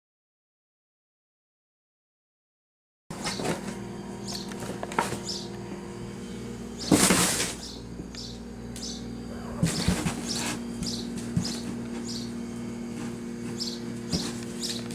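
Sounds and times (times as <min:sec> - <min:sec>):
steady low hum: 0:03.1 - 0:14.9
high chirping: 0:07.6 - 0:12.4
kitten scratching on cardboard: 0:09.6 - 0:14.8.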